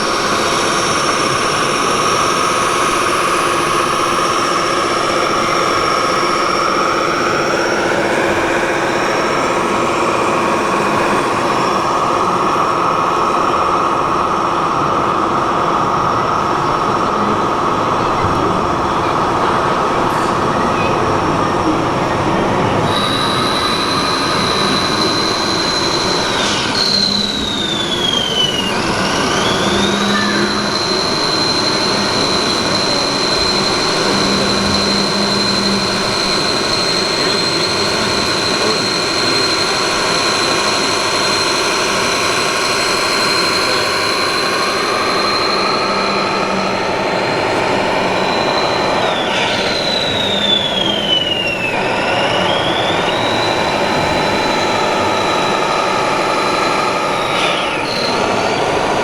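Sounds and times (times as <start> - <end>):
steady background noise: 0.0 - 59.0
electric motor whine: 22.5 - 59.0.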